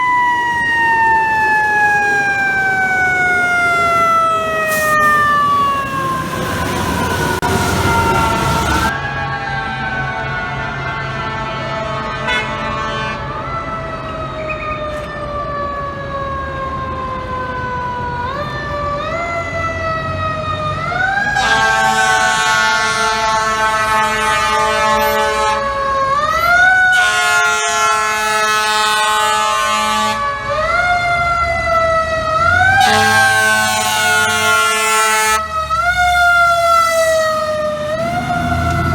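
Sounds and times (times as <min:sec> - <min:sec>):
fire engine siren wailing: 0:00.0 - 0:38.9
air horn blasts: 0:11.3 - 0:13.4, 0:21.4 - 0:25.7, 0:26.9 - 0:30.3, 0:32.8 - 0:35.5.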